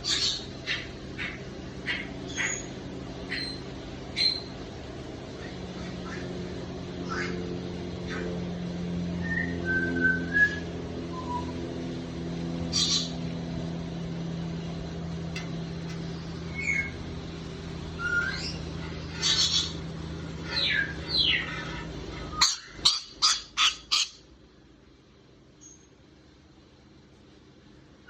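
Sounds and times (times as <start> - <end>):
loud sharp parrot calls: 0.0 - 3.6, 12.7 - 13.2, 18.0 - 19.8, 20.4 - 24.3
parrot chirps and squawks: 0.0 - 3.6, 7.0 - 7.4, 12.7 - 13.2, 18.0 - 19.8, 20.4 - 24.3
steady low hum: 0.0 - 28.0.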